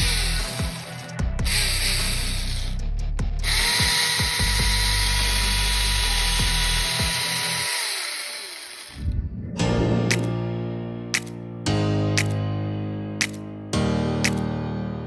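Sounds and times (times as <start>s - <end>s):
electric chainsaw whining: 0.0s - 2.8s, 3.4s - 9.0s.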